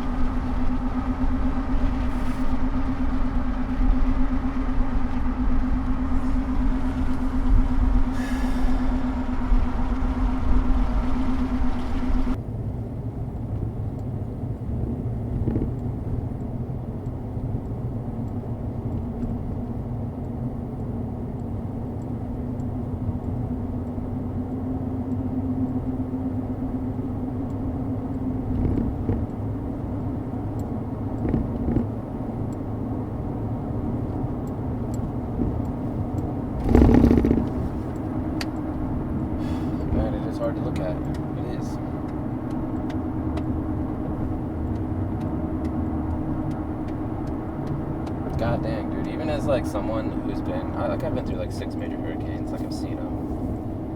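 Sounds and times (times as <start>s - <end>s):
car interior road rumble: 0.0s - 53.9s
constant hum: 0.0s - 53.9s.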